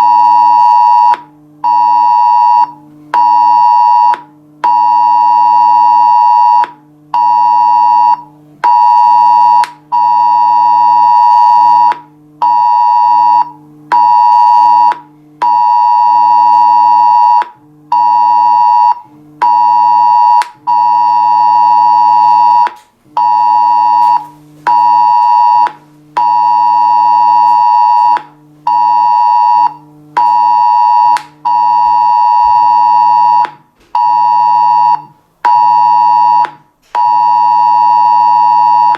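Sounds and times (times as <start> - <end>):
two-pitch phone alert tone: 18.0 - 38.9.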